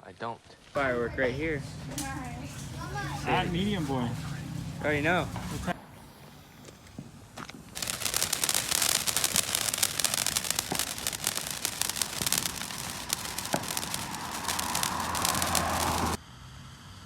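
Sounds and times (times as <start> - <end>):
firecrackers crackling: 0.6 - 16.2
steady hiss: 0.7 - 16.2.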